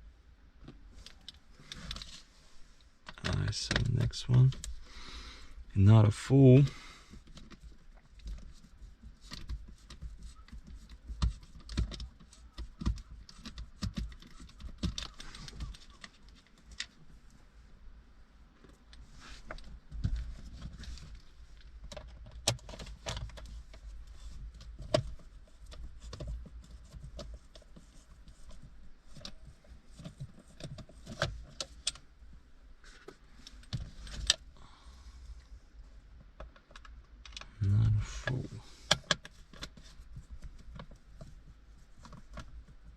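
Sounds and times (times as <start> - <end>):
plastic car trim clicking and rattling: 7.1 - 17.2, 18.6 - 32.4, 33.0 - 34.5, 36.2 - 37.5, 38.8 - 42.9.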